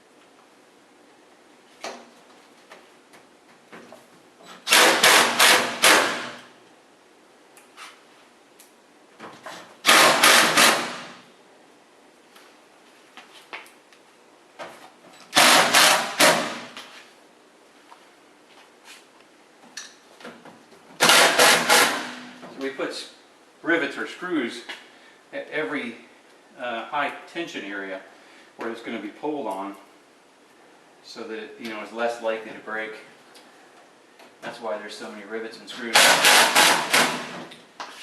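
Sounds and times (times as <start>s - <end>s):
power screwdriver rattling: 4.6s - 6.4s, 9.8s - 11.1s, 15.4s - 16.6s, 21.0s - 22.1s, 35.9s - 37.4s.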